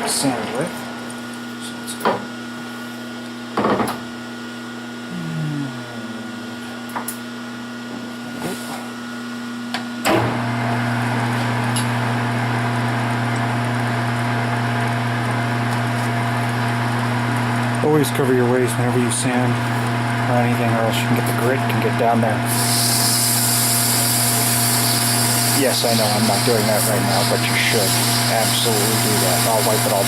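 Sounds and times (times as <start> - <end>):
metal lathe humming: 19.5 - 30.0.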